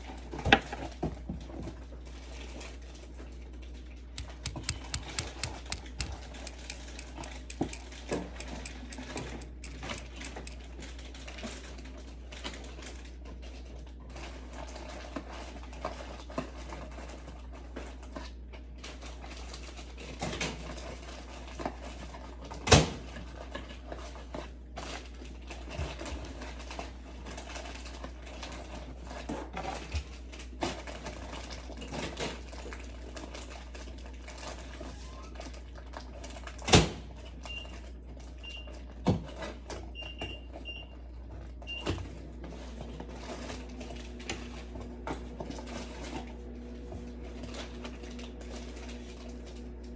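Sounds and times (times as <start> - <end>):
sharp knocks: 4.2 - 7.8
vials and syringe caps clicking: 4.2 - 10.6.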